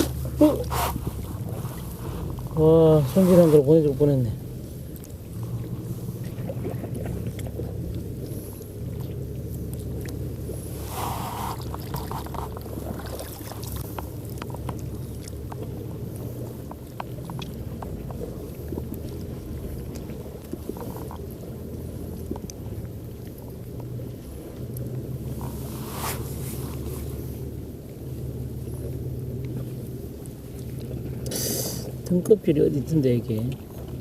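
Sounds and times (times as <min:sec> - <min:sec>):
short hiss: 0:31.3 - 0:31.9.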